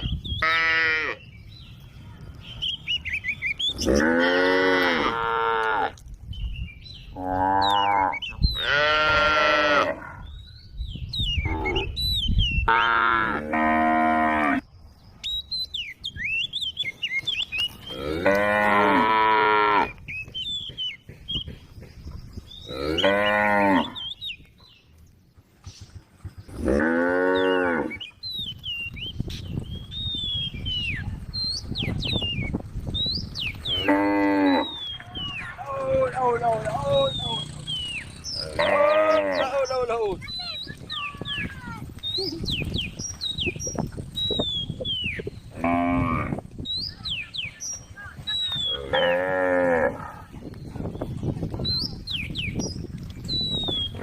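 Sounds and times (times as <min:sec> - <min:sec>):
cattle mooing: 0:03.8 - 0:06.0, 0:07.2 - 0:10.2, 0:17.9 - 0:19.9, 0:33.7 - 0:34.8, 0:38.3 - 0:39.6, 0:48.8 - 0:50.3.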